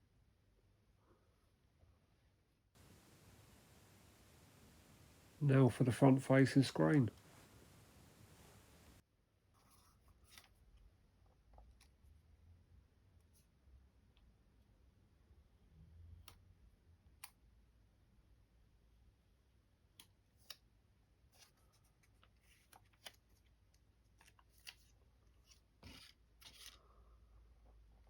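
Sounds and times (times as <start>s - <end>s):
hands rustling: 2.8s - 9.0s.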